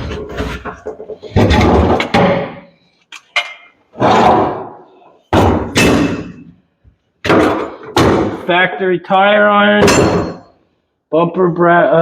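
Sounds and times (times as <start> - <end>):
heavy steel clunks ringing: 9.8 - 10.6.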